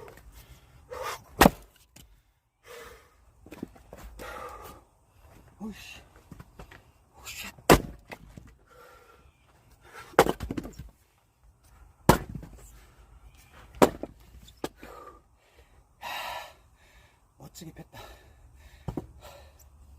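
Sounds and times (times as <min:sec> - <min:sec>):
wood splitting cracks: 0:01.4 - 0:01.8, 0:07.7 - 0:08.5, 0:10.1 - 0:10.9, 0:12.1 - 0:12.5, 0:13.8 - 0:14.1.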